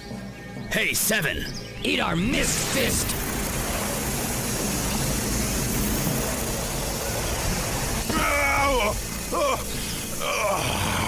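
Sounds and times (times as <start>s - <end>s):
cartoon water gushing: 2.4s - 11.0s.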